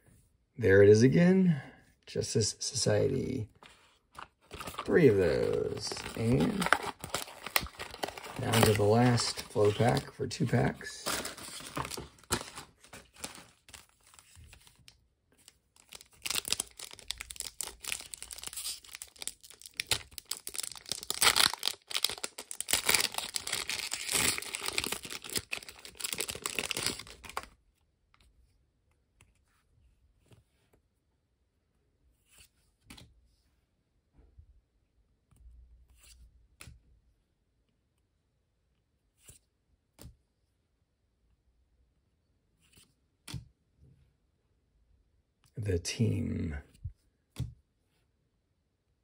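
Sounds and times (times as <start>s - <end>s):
plastic wrapper tearing and crinkling: 4.5s - 10.1s, 11.0s - 14.2s, 15.8s - 27.5s.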